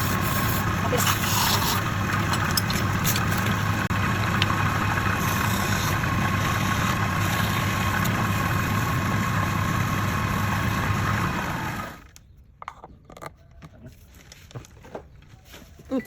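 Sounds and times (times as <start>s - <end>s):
lathe motor humming: 0.0s - 12.0s.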